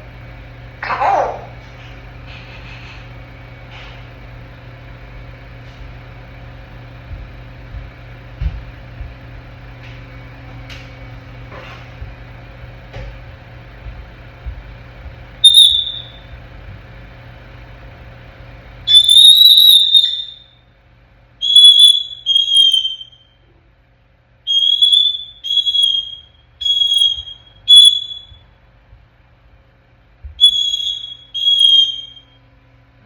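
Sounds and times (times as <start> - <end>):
parrot whistling: 15.4 - 16.3, 18.9 - 20.5, 21.4 - 23.4, 24.5 - 28.4, 30.4 - 32.4.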